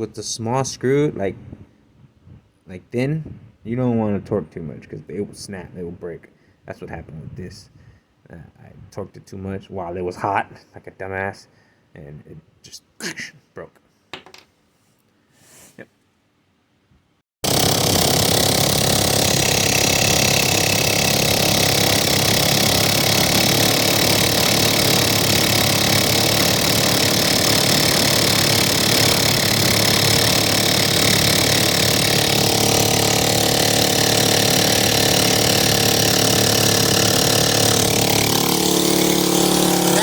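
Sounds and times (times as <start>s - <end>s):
scooter engine running loudly: 17.4s - 40.0s.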